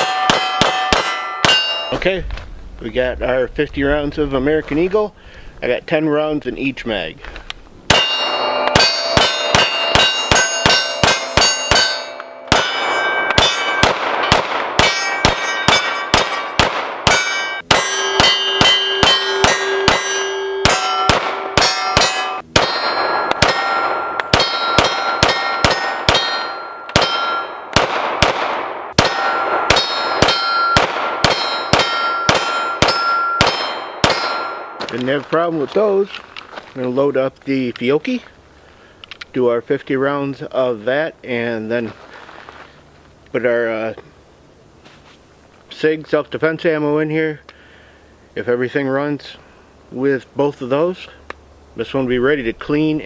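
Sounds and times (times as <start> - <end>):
pistol shots: 0.0 - 1.9, 7.9 - 11.9, 12.5 - 34.9
metallic ringing: 0.0 - 3.4, 7.9 - 27.7, 29.0 - 34.8.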